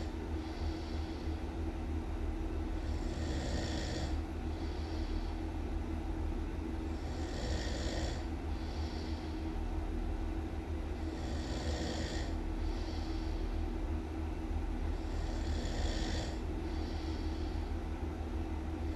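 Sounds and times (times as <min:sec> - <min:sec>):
steady low rumble: 0:00.0 - 0:03.3, 0:04.0 - 0:07.3, 0:08.1 - 0:11.4, 0:12.2 - 0:18.9
loud snoring: 0:02.8 - 0:04.2, 0:07.0 - 0:08.3, 0:11.1 - 0:12.4, 0:15.0 - 0:16.4.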